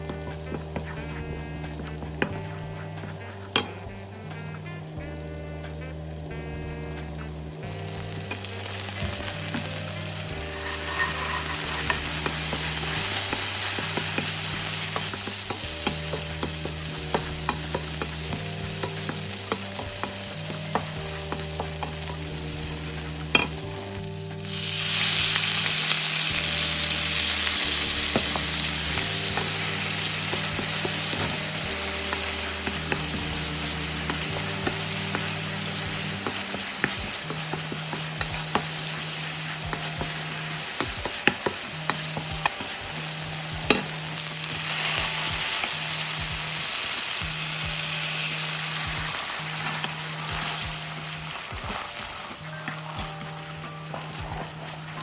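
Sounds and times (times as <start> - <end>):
food sizzling in a frying pan: 0.0 - 55.0
soft background music bass: 0.0 - 55.0.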